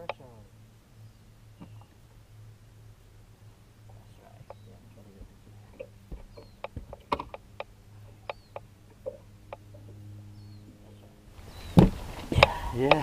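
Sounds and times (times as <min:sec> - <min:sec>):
steady low hum: 0:00.0 - 0:13.0
handling clicks and knocks on boat: 0:04.4 - 0:10.0
loud thump: 0:11.8 - 0:12.5.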